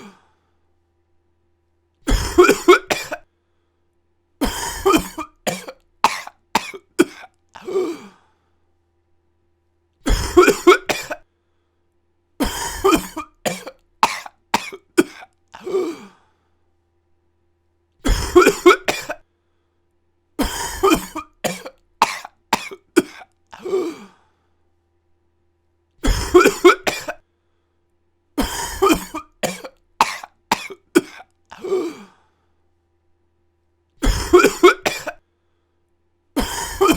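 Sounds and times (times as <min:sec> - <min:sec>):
person coughing: 0:00.0 - 0:00.2, 0:02.1 - 0:03.3, 0:04.4 - 0:08.2, 0:10.0 - 0:11.3, 0:12.4 - 0:16.2, 0:18.0 - 0:19.2, 0:20.4 - 0:24.2, 0:26.0 - 0:27.2, 0:28.4 - 0:32.2, 0:34.0 - 0:35.2, 0:36.4 - 0:36.9.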